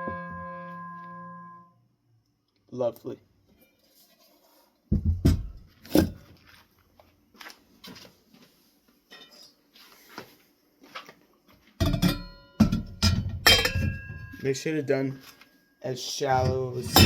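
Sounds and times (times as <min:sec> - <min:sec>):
metal clatter with ring: 0:11.8 - 0:14.5.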